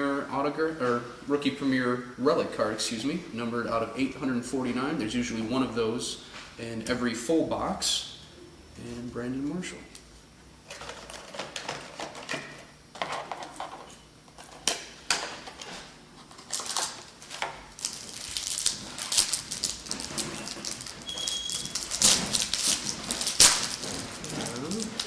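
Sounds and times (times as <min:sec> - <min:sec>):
wrapper crinkling: 0:16.2 - 0:25.0.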